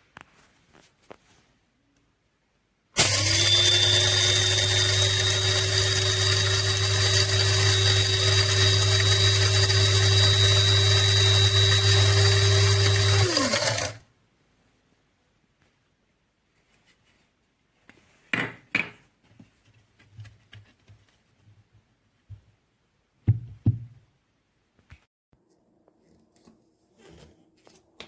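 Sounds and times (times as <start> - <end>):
electric blade grinder whining: 3.0 - 14.0.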